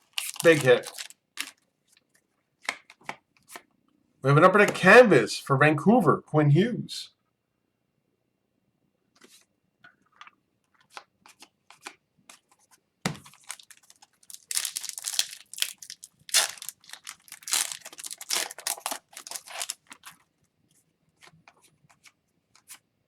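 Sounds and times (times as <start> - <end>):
wrapper tearing and crinkling: 0.0 - 1.6, 13.2 - 20.2.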